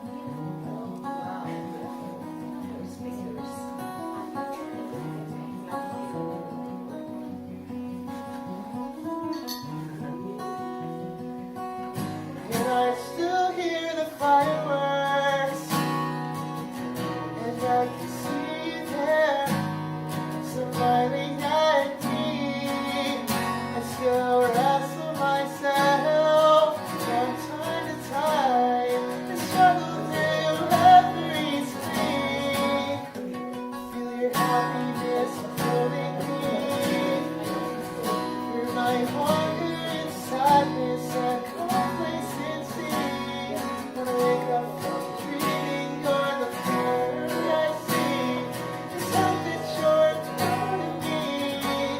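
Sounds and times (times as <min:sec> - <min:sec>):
acoustic guitar chords: 0:00.0 - 0:51.9.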